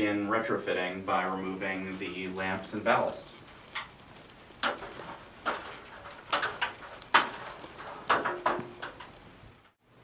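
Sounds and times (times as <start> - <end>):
clicks and knocks on light fixture: 4.6 - 9.8.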